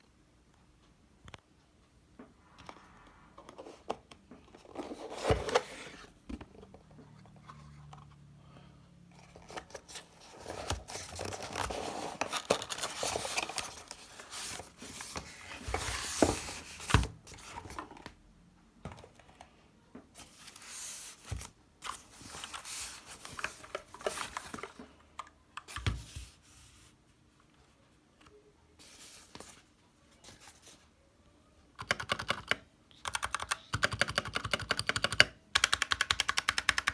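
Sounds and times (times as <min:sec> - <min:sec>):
packaging rustling and crinkling: 0:09.2 - 0:18.1.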